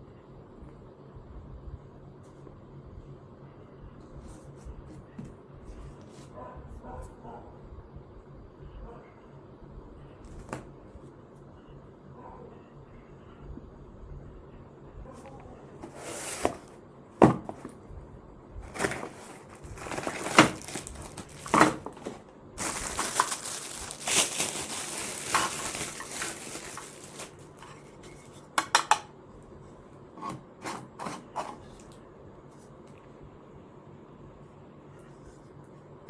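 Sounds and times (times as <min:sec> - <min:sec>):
small hard objects clattering: 0:18.7 - 0:28.0.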